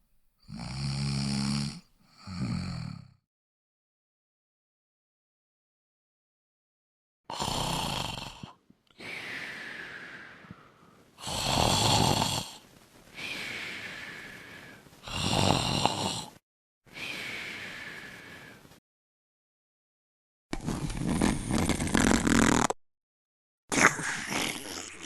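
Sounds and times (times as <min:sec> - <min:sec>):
person snoring: 0:00.4 - 0:03.2, 0:07.3 - 0:12.6, 0:13.2 - 0:18.6, 0:20.6 - 0:22.8
quiet breath: 0:08.4 - 0:11.3, 0:12.4 - 0:15.1, 0:16.2 - 0:18.8.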